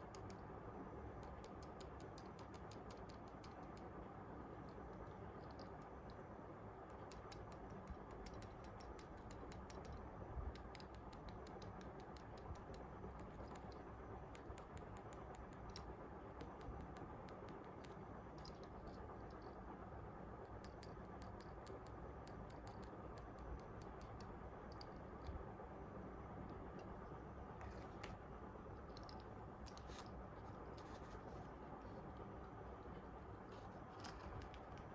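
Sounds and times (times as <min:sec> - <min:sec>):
small clicks and taps: 0:00.0 - 0:19.7, 0:20.3 - 0:25.4, 0:26.4 - 0:34.9
low background hiss: 0:00.0 - 0:34.9.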